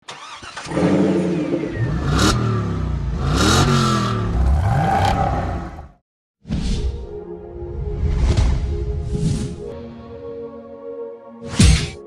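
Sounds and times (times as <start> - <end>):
car engine revving: 0.2 - 6.0.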